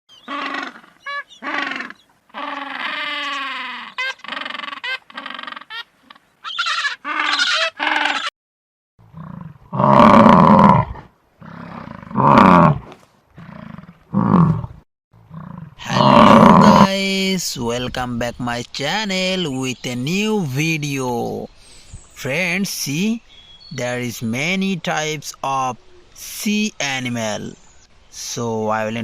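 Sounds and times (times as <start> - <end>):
animal harsh calls: 0.1 - 8.3, 9.1 - 16.9
animal short pitched cries: 0.3 - 5.8, 6.4 - 8.3.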